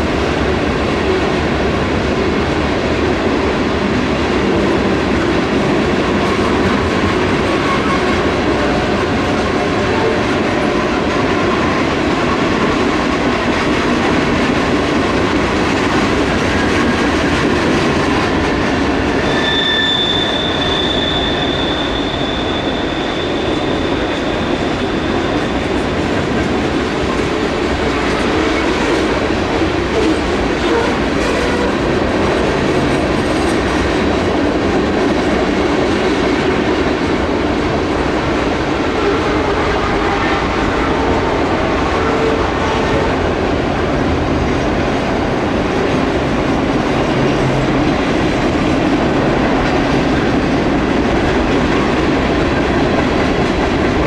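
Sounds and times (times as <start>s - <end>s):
freight train rumbling past: 0.0s - 54.0s
high wheel squeal: 19.0s - 26.2s.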